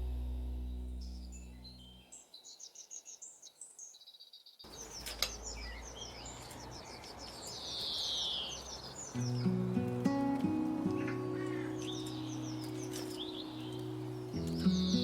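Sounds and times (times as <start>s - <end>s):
outdoor background noise: 0.0s - 15.0s
small birds chirping: 0.0s - 15.0s
background music: 9.2s - 15.0s.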